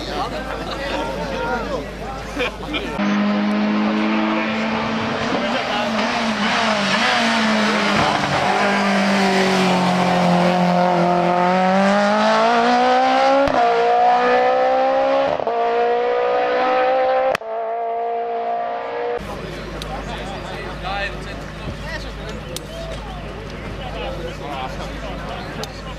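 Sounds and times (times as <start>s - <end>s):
race car engine accelerating: 3.0s - 19.4s.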